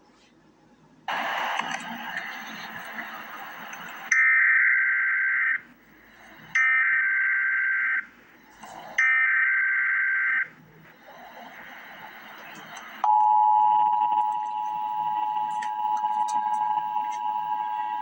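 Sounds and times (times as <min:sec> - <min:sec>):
digital data tone bursts: 0:09.0 - 0:18.0.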